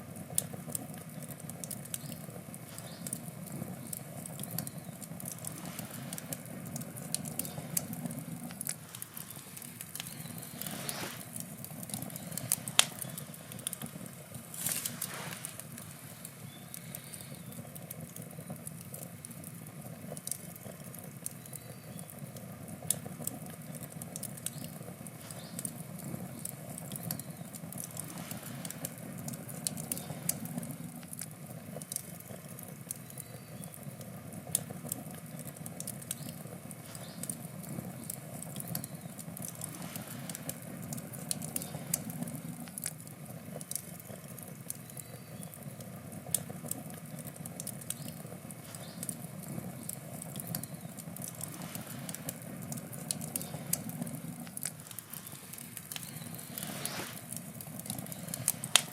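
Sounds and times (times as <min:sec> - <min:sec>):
burning wood crackling and popping: 0:00.0 - 0:58.9
campfire flames rushing: 0:00.0 - 0:58.9.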